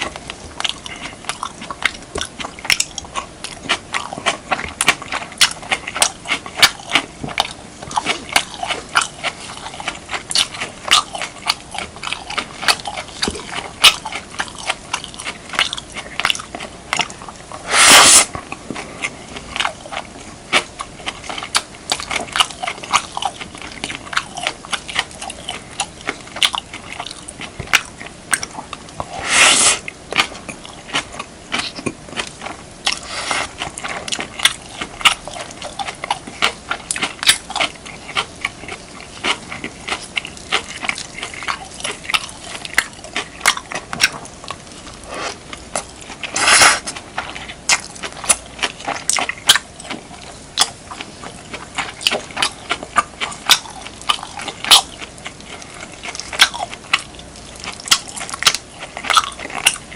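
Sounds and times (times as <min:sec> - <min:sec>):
wet chewing and smacking: 0:00.0 - 0:59.9.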